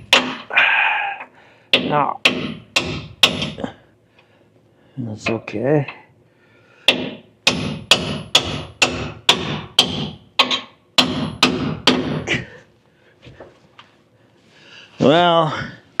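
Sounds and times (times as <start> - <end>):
hammer striking steel: 0.0 - 0.5, 1.7 - 3.6, 6.9 - 12.3.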